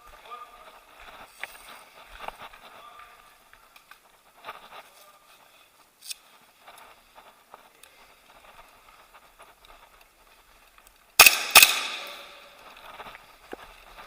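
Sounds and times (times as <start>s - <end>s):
faint rustling: 0.0s - 11.2s, 12.3s - 14.0s
airsoft gun shots: 11.2s - 12.4s.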